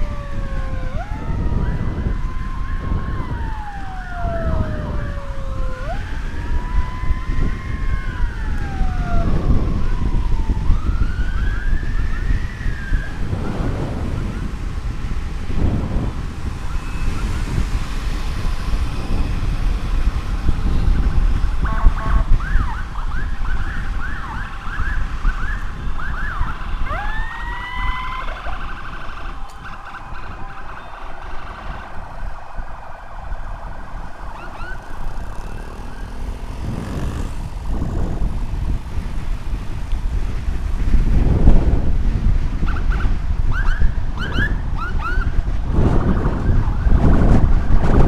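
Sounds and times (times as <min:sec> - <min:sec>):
emergency siren: 0:00.0 - 0:48.0
wind rumble on microphone: 0:00.0 - 0:48.0.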